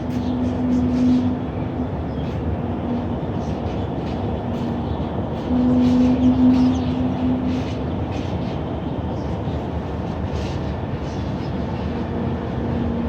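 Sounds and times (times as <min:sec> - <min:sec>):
outdoor background noise: 0:00.0 - 0:13.0
low steady horn-like tone: 0:05.5 - 0:07.4.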